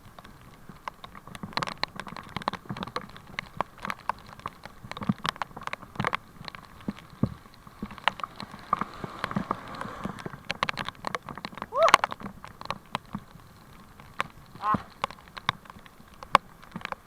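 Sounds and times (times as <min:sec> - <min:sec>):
raindrops hitting close to microphone: 0:00.0 - 0:17.0
heavy rain hiss: 0:06.3 - 0:11.0.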